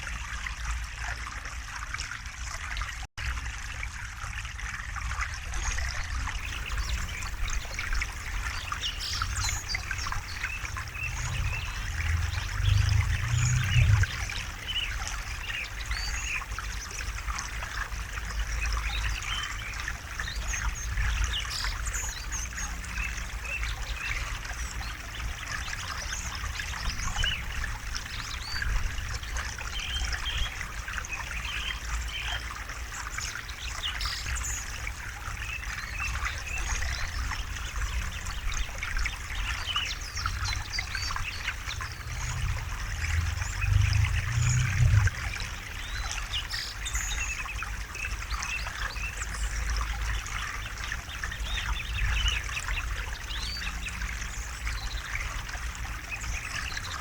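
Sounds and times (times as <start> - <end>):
river water trickling: 0.0 - 57.0
low rumble: 6.5 - 15.4, 41.5 - 46.2.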